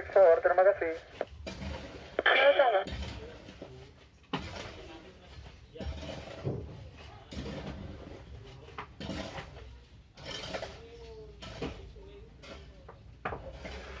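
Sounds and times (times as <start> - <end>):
faint voices: 0.0 - 1.2, 2.2 - 3.9.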